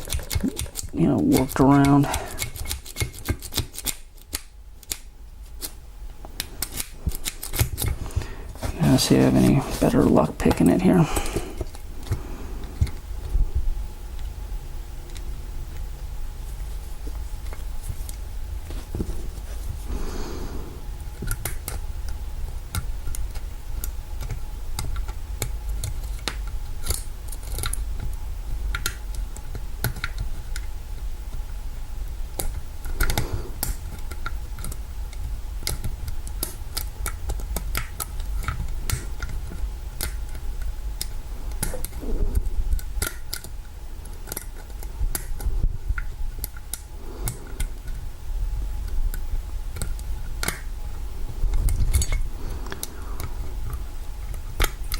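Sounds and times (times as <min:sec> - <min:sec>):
lock pick metallic clicks and scrapes: 0:00.0 - 0:05.0
low hum: 0:40.7 - 0:54.9.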